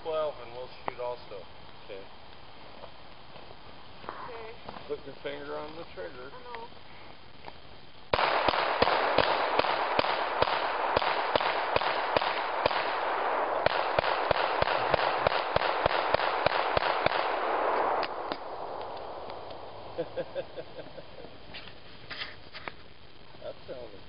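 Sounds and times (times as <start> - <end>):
steady hiss: 0.0 - 24.0
rapid pistol gunfire: 8.1 - 19.3.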